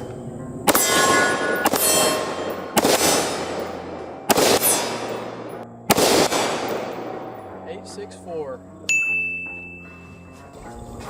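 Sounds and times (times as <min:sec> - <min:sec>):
rifle shots: 0:00.6 - 0:07.7
metallic clang of steel targets: 0:00.7 - 0:05.6.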